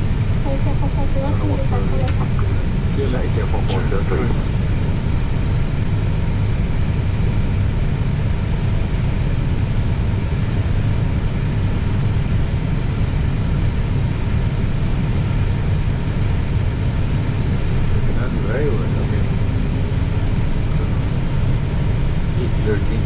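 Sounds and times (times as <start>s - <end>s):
faint steady tones: 0.0s - 5.5s
aircraft cabin rumble and hiss: 0.0s - 23.0s.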